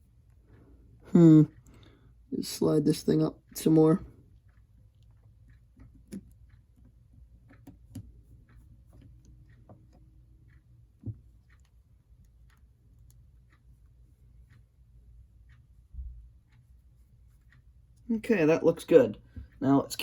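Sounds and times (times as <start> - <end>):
small parts clicking and tapping: 4.3 - 18.1.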